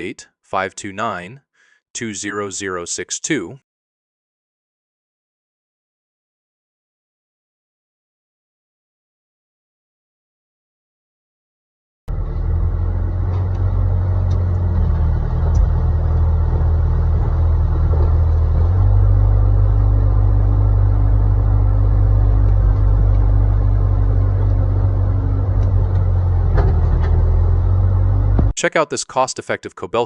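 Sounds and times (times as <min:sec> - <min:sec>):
excavator diesel engine rumbling: 0:12.1 - 0:28.6.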